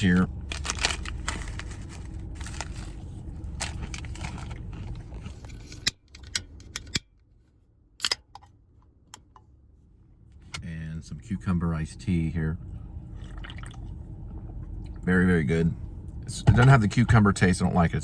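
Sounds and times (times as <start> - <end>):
peanuts crunching: 0.0 - 5.1
crinkling packaging: 0.0 - 5.5
low steady hum: 0.0 - 18.0.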